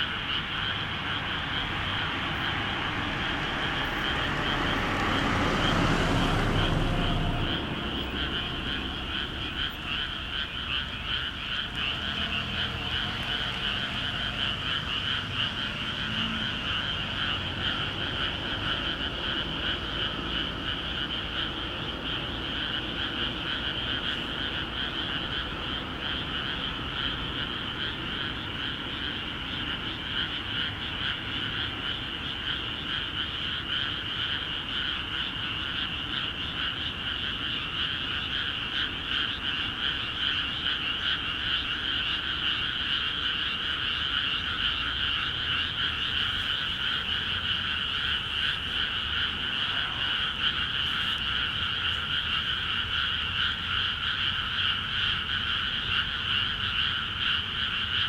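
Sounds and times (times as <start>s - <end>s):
frogs croaking chorus: 0.0s - 58.0s.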